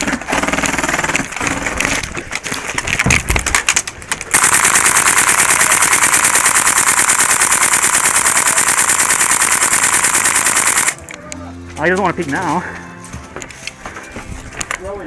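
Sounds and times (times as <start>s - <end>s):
airsoft gun firing full-auto: 4.3s - 11.0s.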